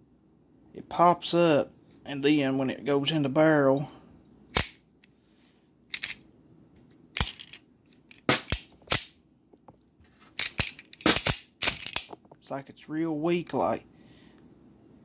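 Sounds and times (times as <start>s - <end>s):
pistol slide metallic clicks: 4.5s - 4.8s.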